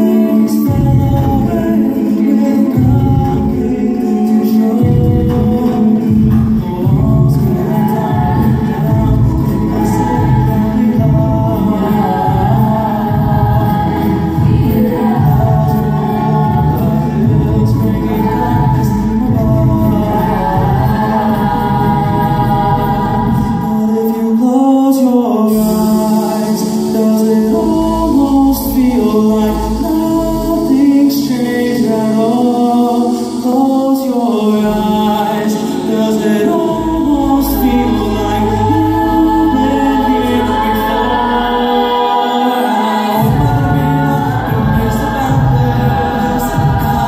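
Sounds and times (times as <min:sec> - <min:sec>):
a cappella group singing harmony: 0:00.0 - 0:47.0
low sung bass line: 0:04.8 - 0:23.6, 0:43.2 - 0:47.0.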